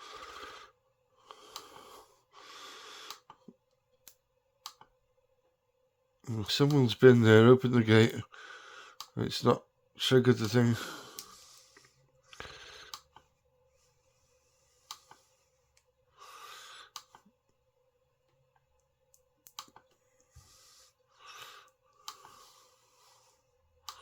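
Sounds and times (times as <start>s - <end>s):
person breathing and sighing: 10.7s - 13.1s.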